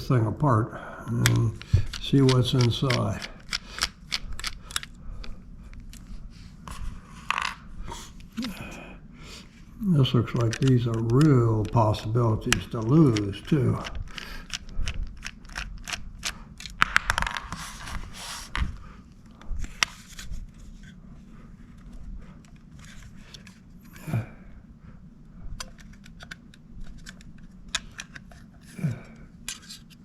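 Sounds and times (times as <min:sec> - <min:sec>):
plastic and metal clicks and scrapes: 0:01.2 - 0:06.1, 0:10.3 - 0:18.8, 0:25.6 - 0:30.0
person making low sounds: 0:07.9 - 0:09.0.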